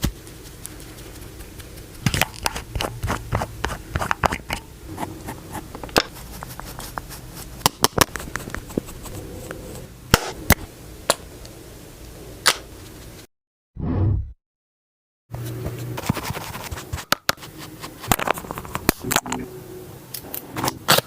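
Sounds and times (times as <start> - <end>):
soft scratching: 0.1 - 4.1, 4.9 - 9.9.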